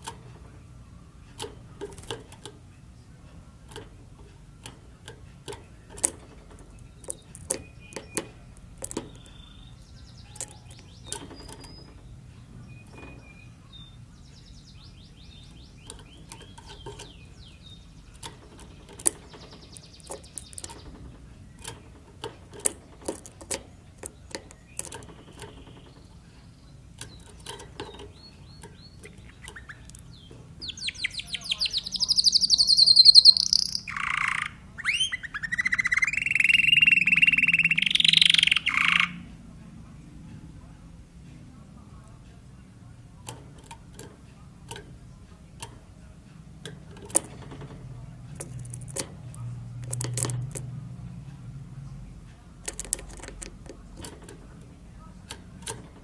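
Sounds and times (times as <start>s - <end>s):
canary singing and chirping: 0.0s - 39.8s, 41.9s - 56.0s
low steady hum: 0.0s - 56.0s
sharp clicks and taps: 3.6s - 9.5s, 10.2s - 12.0s, 15.5s - 26.2s, 26.9s - 33.8s, 46.6s - 50.8s, 52.2s - 56.0s.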